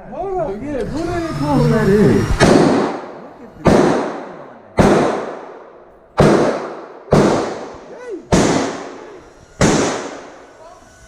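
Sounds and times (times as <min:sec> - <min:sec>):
gunshots with long echo: 0:02.4 - 0:10.4.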